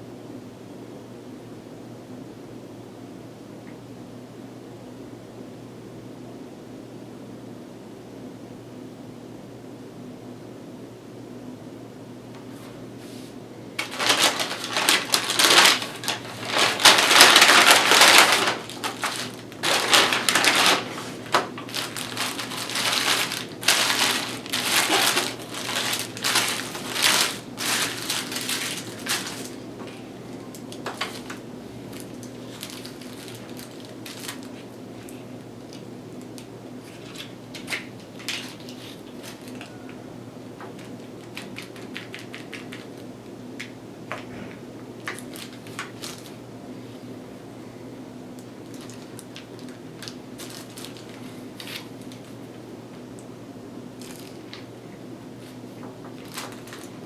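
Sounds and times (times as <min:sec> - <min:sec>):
sandwich wrapper crinkling: 0:13.8 - 0:29.7, 0:30.5 - 0:35.8, 0:36.8 - 0:39.7, 0:40.8 - 0:43.1, 0:45.0 - 0:46.4, 0:48.6 - 0:52.4, 0:54.0 - 0:54.6, 0:55.4 - 0:57.0.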